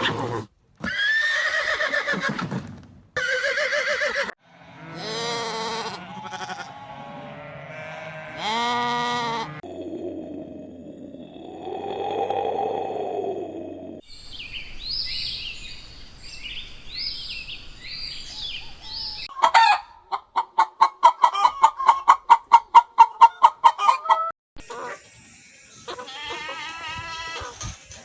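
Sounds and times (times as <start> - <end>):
high chirping calls: 14.0 - 19.3
chicken clucking: 19.3 - 25.0.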